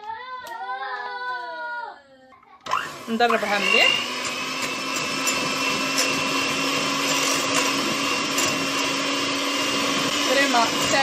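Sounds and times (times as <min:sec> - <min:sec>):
electric mixer running: 0:02.7 - 0:11.0.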